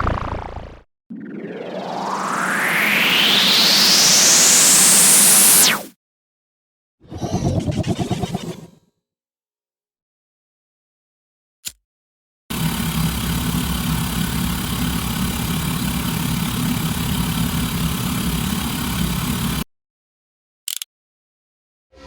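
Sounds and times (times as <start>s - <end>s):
spinning whir with low rumble: 0.0s - 5.8s, 7.1s - 8.8s, 12.5s - 19.6s.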